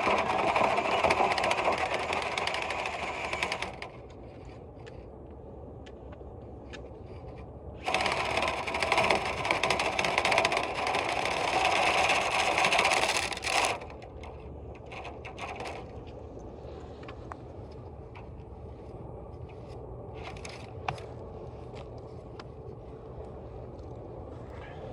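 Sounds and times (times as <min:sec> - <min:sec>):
loud rushing rattling noise: 0:00.0 - 0:04.1, 0:07.8 - 0:16.0.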